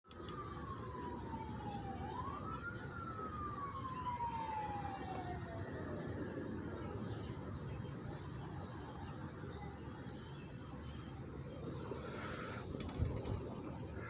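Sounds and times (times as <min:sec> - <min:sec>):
emergency siren wailing: 0:00.2 - 0:08.9.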